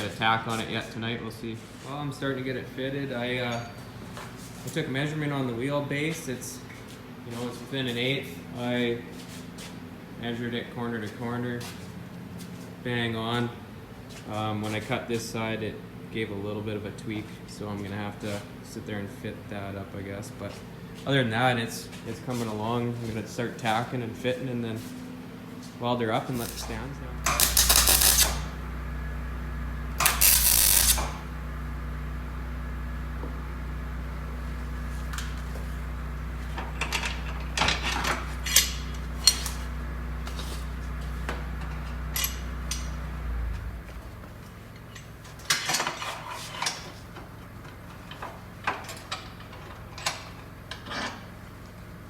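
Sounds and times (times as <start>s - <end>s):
steady low hum: 0.0s - 50.8s
welding crackling sizzle: 26.3s - 28.6s, 30.0s - 31.4s.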